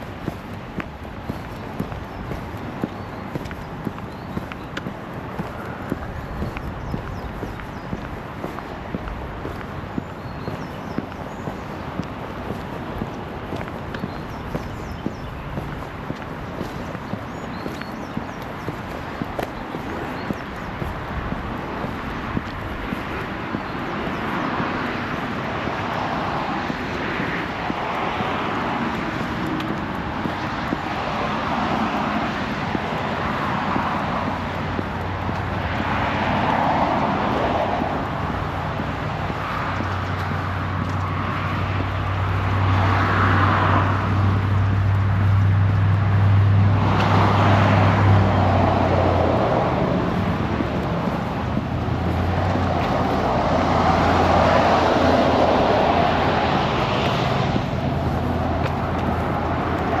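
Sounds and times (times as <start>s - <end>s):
low engine hum: 0.0s - 60.0s
vehicles passing: 0.0s - 60.0s.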